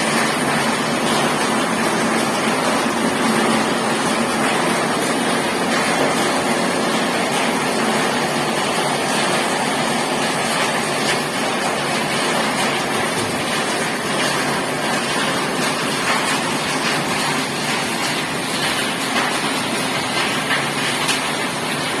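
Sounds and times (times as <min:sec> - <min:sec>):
heavy rain: 0:00.0 - 0:22.0.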